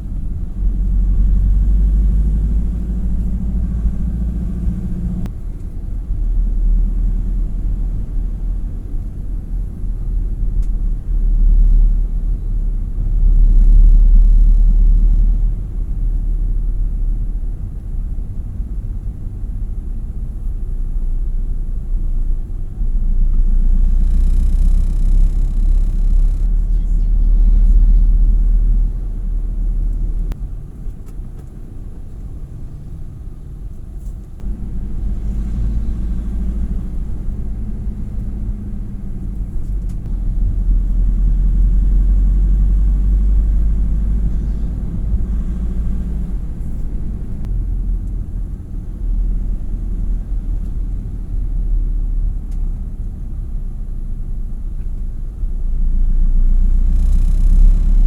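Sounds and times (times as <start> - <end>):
road vehicle rumble: 0.0 - 58.0.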